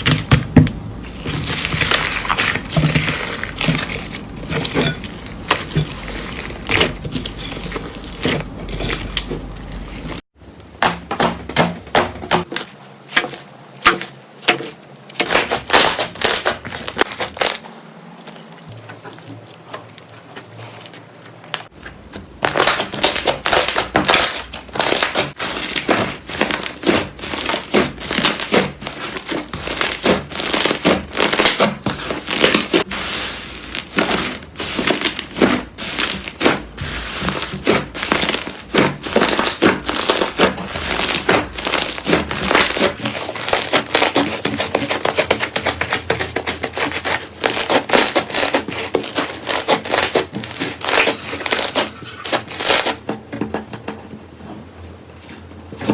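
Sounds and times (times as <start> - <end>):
slime squished by hands: 1.2 - 10.2, 22.4 - 53.0.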